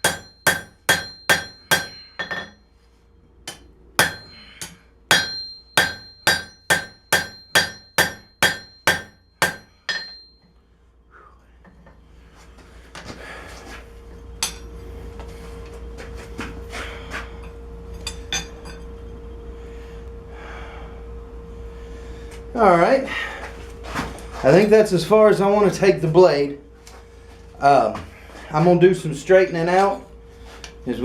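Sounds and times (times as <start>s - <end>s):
hammer striking steel on anvil: 0.0s - 2.6s, 3.5s - 10.5s, 14.4s - 14.8s, 18.0s - 18.9s
steady rushing hum: 0.0s - 31.0s.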